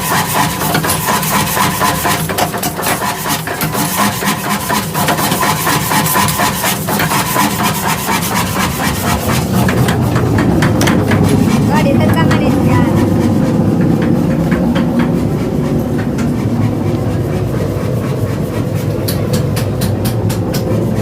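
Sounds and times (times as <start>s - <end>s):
fast continuous knocks: 0.0s - 21.0s
workshop machinery running: 0.0s - 21.0s.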